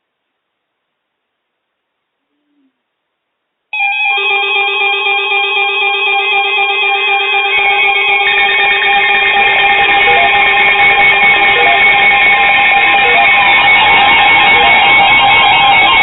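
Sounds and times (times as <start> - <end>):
electronic alert tones: 3.8 - 16.0.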